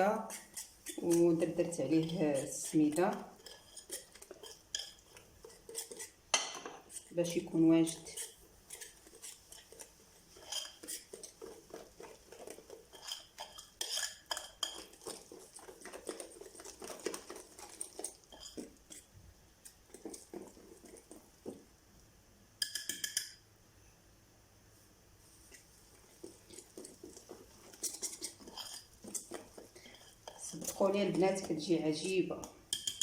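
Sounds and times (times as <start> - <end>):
metal utensil scraping a bowl: 0.0 - 19.1, 19.9 - 21.6, 26.1 - 32.1.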